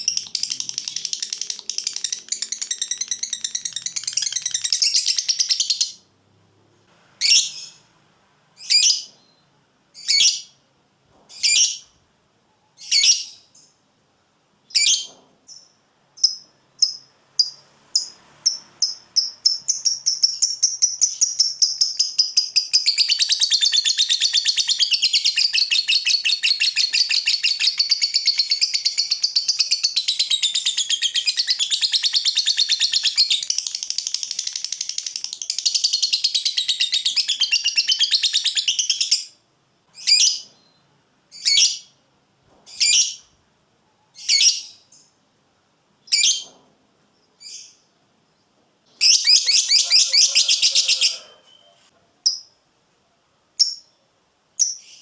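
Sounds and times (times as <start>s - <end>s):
lovebird rattling chatter: 0.0s - 5.6s, 33.4s - 35.8s.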